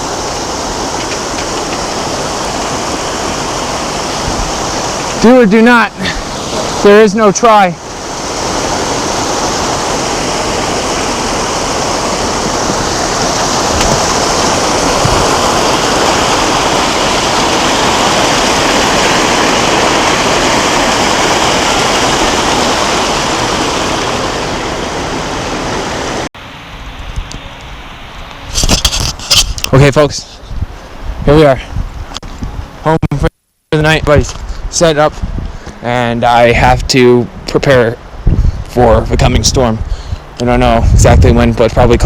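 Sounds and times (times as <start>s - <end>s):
creek rushing over rocks: 0.0s - 26.6s.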